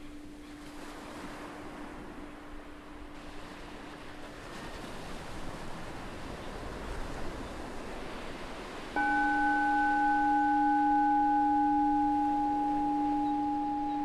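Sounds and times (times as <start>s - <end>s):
ocean waves: 0.0s - 14.0s
meditation bell ringing: 9.0s - 14.0s.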